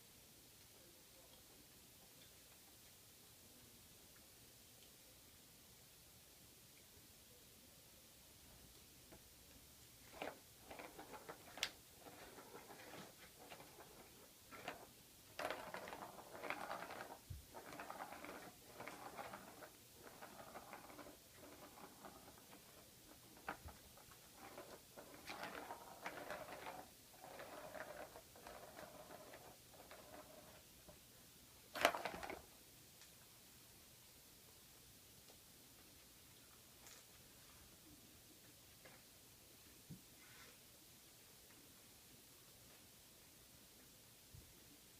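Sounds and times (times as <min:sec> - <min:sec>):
plastic balls rolling and rattling: 0:10.0 - 0:31.0, 0:31.7 - 0:32.5.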